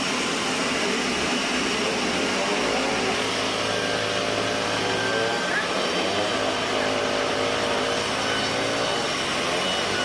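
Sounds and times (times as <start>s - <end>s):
band sawmill running: 0.0s - 10.0s.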